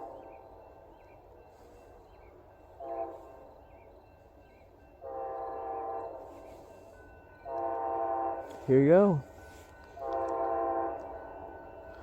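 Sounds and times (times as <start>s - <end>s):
low train rumble: 0.0s - 12.0s
train air horn blasts: 2.7s - 3.5s, 5.0s - 11.7s.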